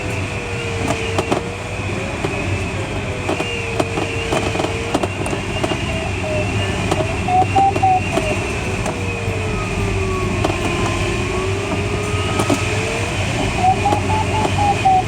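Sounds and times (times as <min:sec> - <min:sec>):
faint wavering tone: 0:06.0 - 0:08.5.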